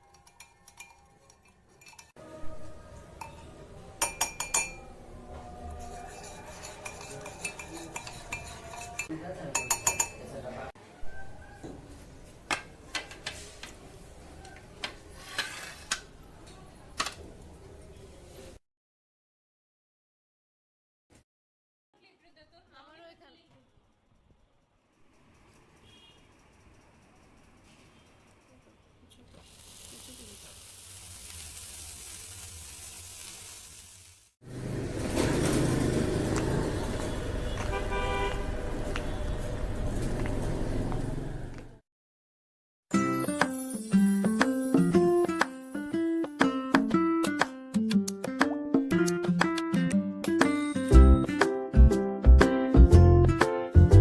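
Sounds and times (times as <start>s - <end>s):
faint steady hiss: 29.2s - 34.4s
cars passing: 34.5s - 41.8s
car horn: 37.1s - 39.3s.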